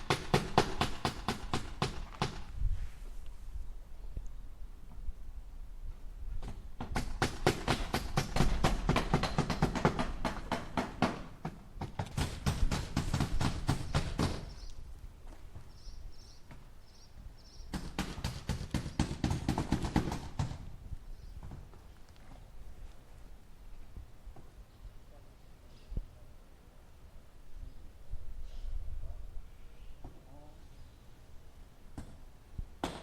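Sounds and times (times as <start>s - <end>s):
hammer striking nails into wood: 0.0s - 2.4s, 6.4s - 14.6s, 17.7s - 20.6s, 32.8s - 33.0s.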